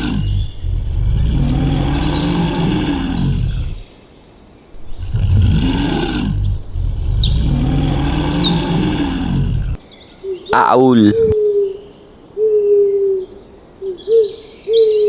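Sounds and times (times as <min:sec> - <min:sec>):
bear growling: 0:00.0 - 0:03.9, 0:04.7 - 0:09.8, 0:10.6 - 0:11.4
birds chirping: 0:00.0 - 0:11.9.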